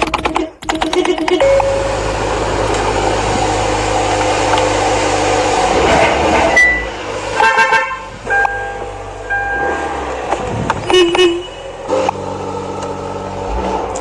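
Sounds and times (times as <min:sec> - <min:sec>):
car horn honk: 0:00.6 - 0:12.1.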